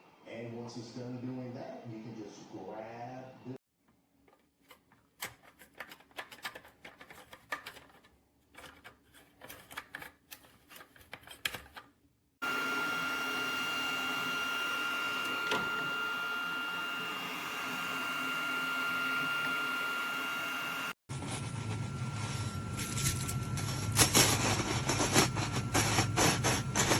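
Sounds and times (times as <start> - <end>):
printer high whine: 12.4 - 21.0, 21.6 - 26.9.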